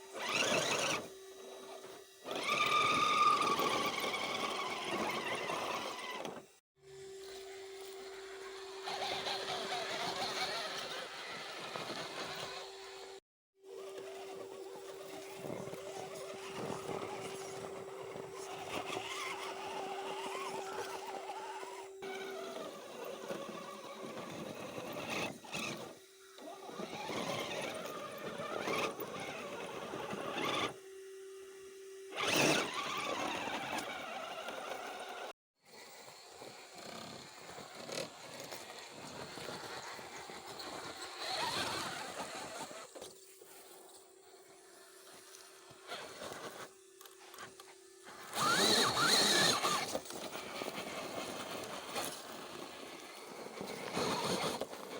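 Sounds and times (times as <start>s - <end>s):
electric motor whine: 0.0s - 35.3s, 35.9s - 54.9s
tyres and chassis scraping: 48.1s - 54.9s.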